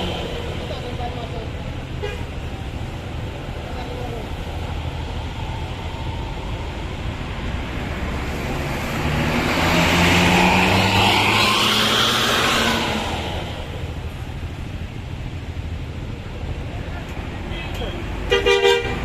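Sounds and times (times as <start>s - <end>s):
bus engine hum: 0.0s - 19.0s.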